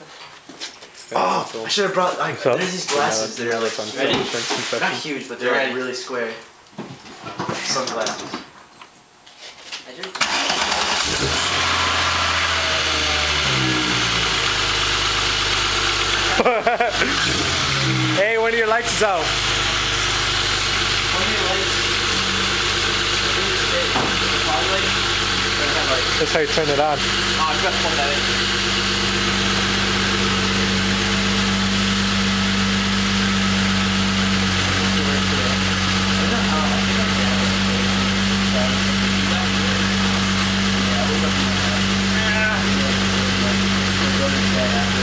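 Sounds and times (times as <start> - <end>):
car engine idling: 10.2 - 45.0.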